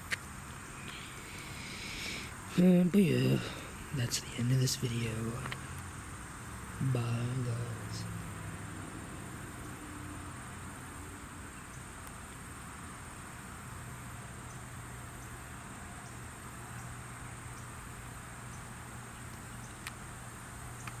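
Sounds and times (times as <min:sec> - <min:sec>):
low steady hum: 0:00.0 - 0:21.0
insect chorus high trill: 0:00.5 - 0:12.0
faint clicks: 0:05.4 - 0:05.9, 0:20.8 - 0:21.0.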